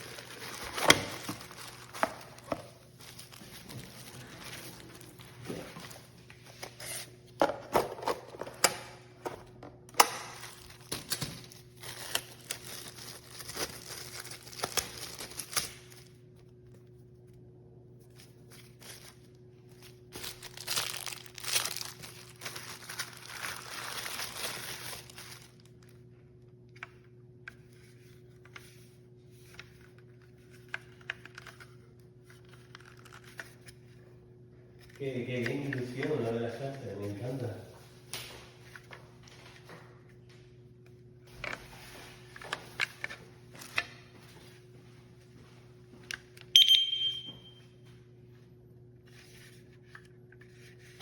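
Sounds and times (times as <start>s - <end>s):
packaging crinkling and tearing: 0.0s - 5.2s, 10.0s - 16.2s, 18.2s - 25.9s.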